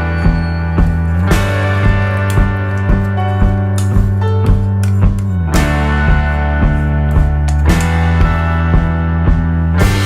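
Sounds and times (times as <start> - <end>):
guitar music: 0.0 - 10.0
steady drum beat: 0.0 - 10.0.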